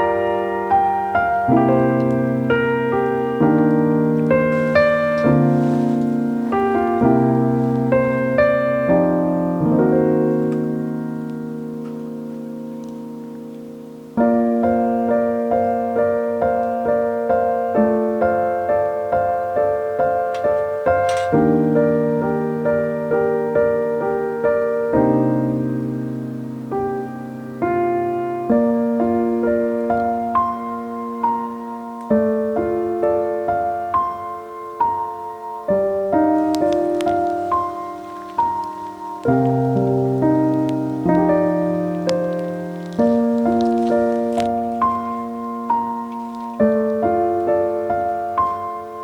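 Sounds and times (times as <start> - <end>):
gentle piano music: 0.0 - 49.0.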